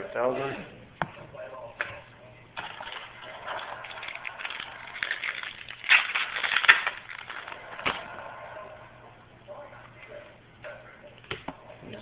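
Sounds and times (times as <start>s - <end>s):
foil wrapper crinkling: 2.6s - 7.9s.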